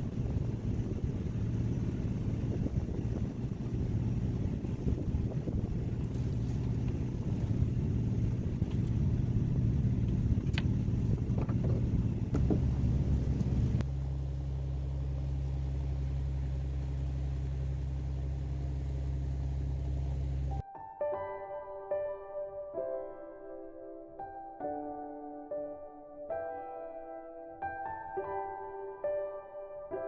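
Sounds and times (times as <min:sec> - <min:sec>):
boat engine rumbling: 0:00.0 - 0:20.6.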